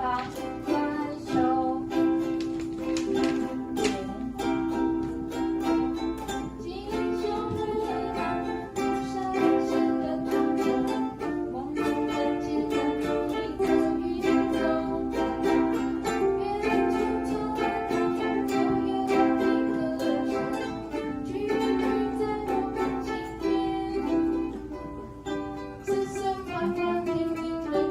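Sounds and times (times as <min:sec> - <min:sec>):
ukulele strumming: 0:00.0 - 0:27.9.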